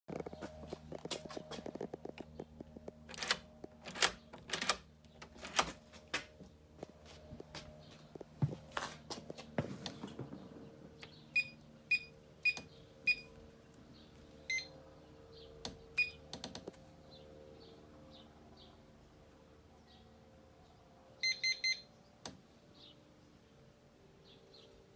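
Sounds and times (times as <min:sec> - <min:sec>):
deadbolt clicks and knocks: 0:03.1 - 0:05.8
keypad beeping: 0:14.5 - 0:14.7, 0:21.2 - 0:21.9.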